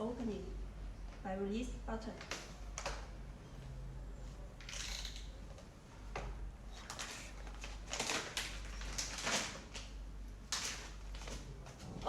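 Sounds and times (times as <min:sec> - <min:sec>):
plastic bag rustling: 0:06.7 - 0:12.0.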